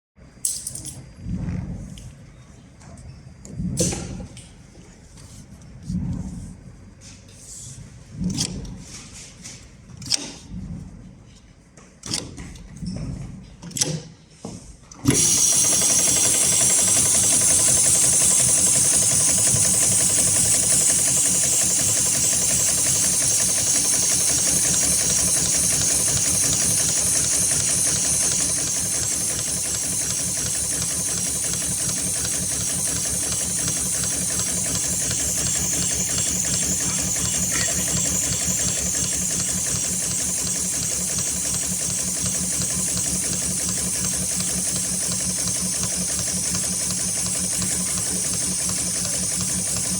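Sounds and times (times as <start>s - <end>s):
sewing machine stitching: 15.0s - 49.9s.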